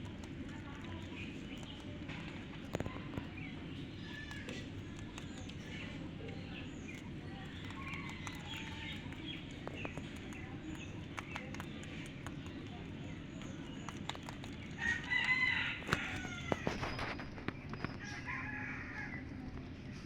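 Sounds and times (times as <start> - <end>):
birds chirping: 0.0 - 18.4
low background rumble: 0.0 - 20.0
sharp clicks: 6.9 - 16.6.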